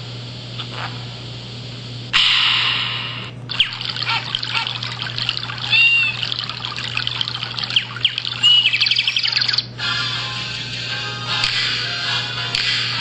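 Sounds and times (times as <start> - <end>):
trickling water hiss: 3.5 - 9.6
birdsong ringtone: 4.9 - 10.4.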